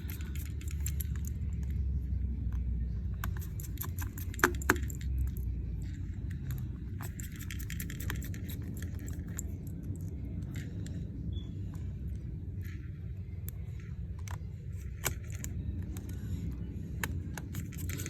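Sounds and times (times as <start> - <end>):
small metal tools clicking: 0.0 - 1.7, 3.2 - 11.0, 17.0 - 18.0
steady low hum: 0.0 - 18.0.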